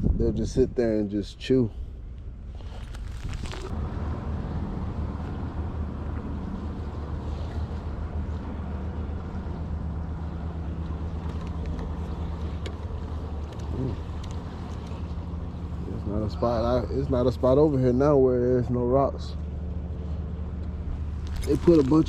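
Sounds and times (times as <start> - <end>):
wind on microphone: 0.0 - 1.0
motor droning: 1.8 - 22.0.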